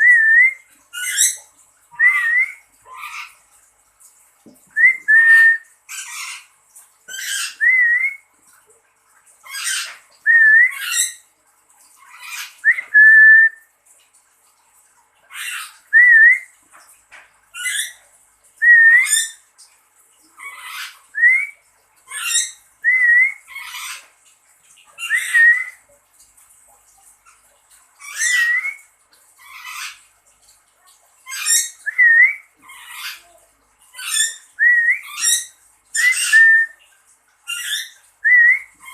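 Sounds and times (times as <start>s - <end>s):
parrot squawking: 0.9s - 1.4s, 2.0s - 3.4s, 5.4s - 6.5s, 7.1s - 7.9s, 28.0s - 28.8s, 31.3s - 36.7s, 37.5s - 38.9s.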